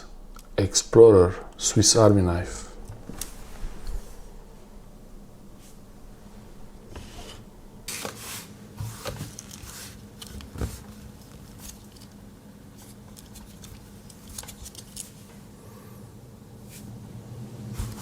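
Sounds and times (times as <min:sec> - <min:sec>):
sharp knock: 0:00.0 - 0:08.0.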